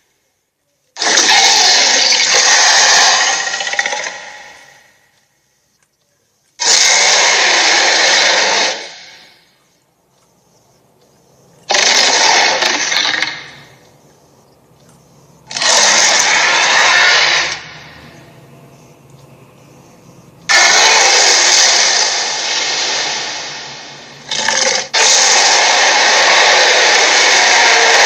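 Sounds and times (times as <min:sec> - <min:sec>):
loud hissing bursts: 0:01.0 - 0:04.7, 0:06.6 - 0:09.5, 0:11.7 - 0:13.8, 0:15.5 - 0:18.0, 0:20.5 - 0:28.0.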